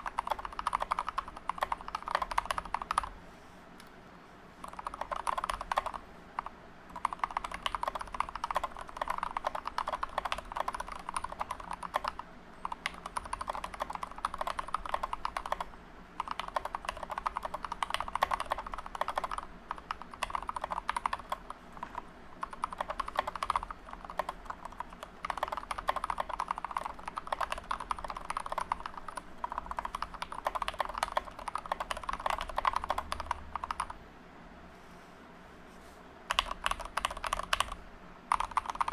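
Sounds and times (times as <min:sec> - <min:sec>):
fast mechanical keyboard typing: 0:00.0 - 0:03.1, 0:04.6 - 0:34.0, 0:36.3 - 0:38.9.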